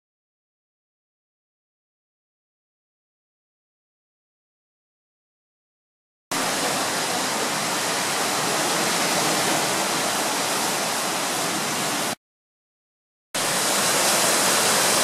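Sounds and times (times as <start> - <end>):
ocean surf hissing: 6.3 - 12.2, 13.4 - 15.0.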